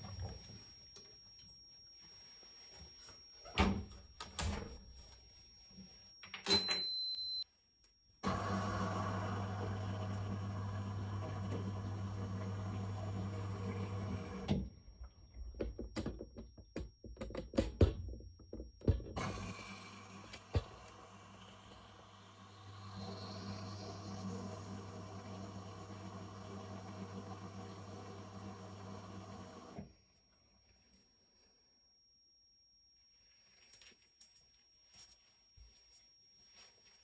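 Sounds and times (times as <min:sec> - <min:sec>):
high beep: 0:06.5 - 0:07.4
washing machine motor hum: 0:08.2 - 0:14.8, 0:19.1 - 0:29.9.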